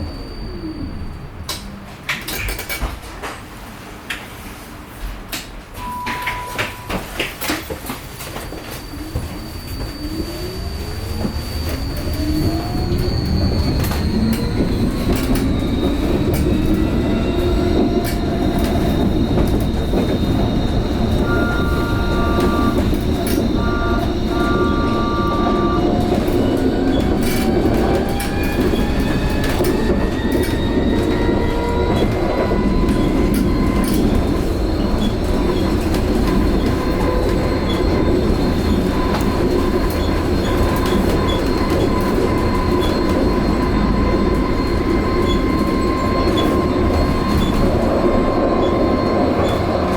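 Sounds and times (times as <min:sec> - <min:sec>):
tram wheels rumbling on rails: 0:00.0 - 0:49.9
two-tone beeping: 0:05.8 - 0:07.2, 0:18.6 - 0:28.0.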